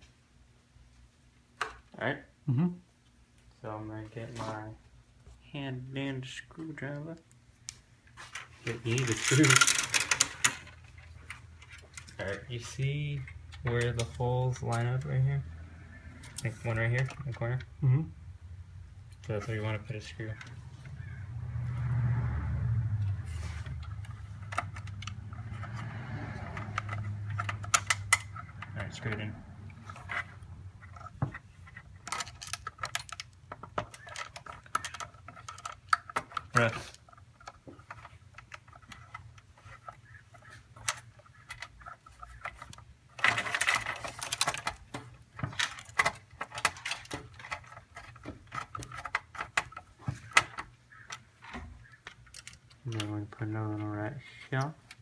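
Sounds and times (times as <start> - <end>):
rapid clicking and rattling: 8.7 - 12.4.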